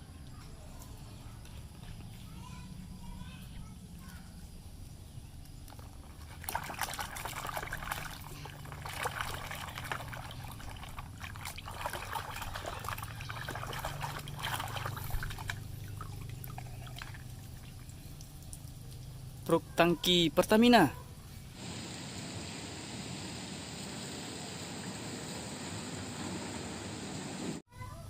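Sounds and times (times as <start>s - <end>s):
water trickling and splashing: 5.6s - 27.4s.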